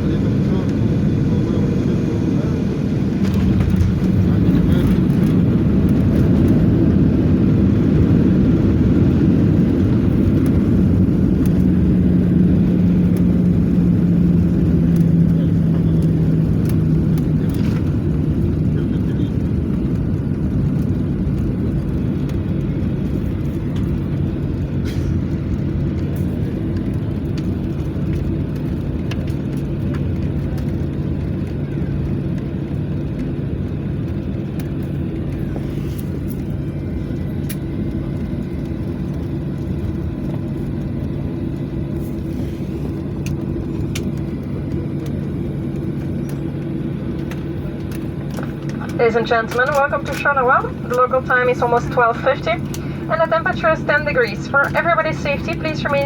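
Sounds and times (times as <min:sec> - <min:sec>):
airliner cabin engine hum: 0:00.0 - 0:56.0.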